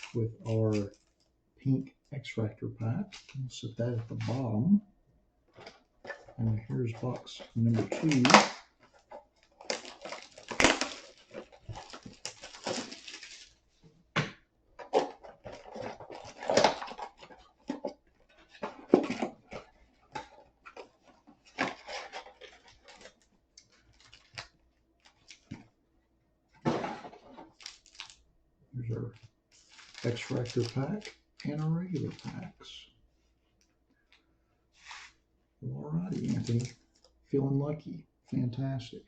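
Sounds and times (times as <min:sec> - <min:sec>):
foil packs crinkling: 0:06.6 - 0:13.6, 0:14.9 - 0:17.9, 0:18.5 - 0:25.6, 0:27.0 - 0:28.2, 0:29.5 - 0:32.6, 0:36.1 - 0:36.7
cardboard box tearing: 0:09.6 - 0:13.5.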